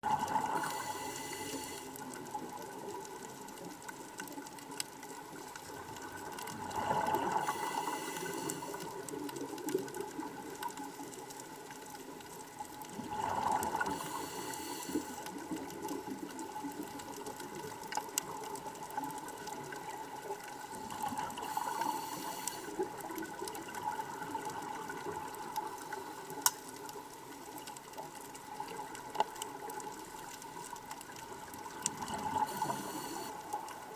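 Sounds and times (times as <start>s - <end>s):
exhaled bubbles gurgling: 0.0s - 33.9s
underwater hiss: 0.1s - 2.6s, 6.6s - 9.7s, 13.0s - 16.0s, 19.8s - 26.9s, 31.7s - 33.9s.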